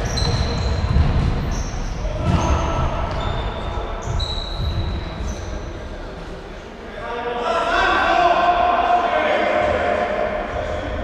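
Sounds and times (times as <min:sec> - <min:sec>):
sneakers squeaking on court floor: 0:00.0 - 0:05.9.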